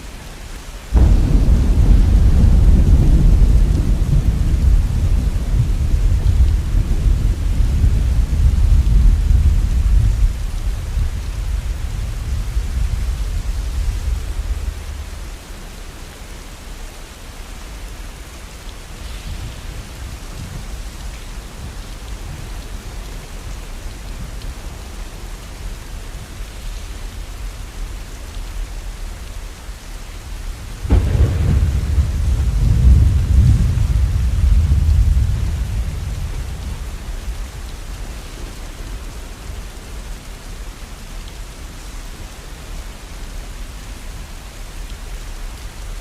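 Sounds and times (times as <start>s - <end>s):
steady rain falling: 0.0s - 46.0s
thunder rumbling: 0.9s - 15.7s, 30.6s - 38.7s.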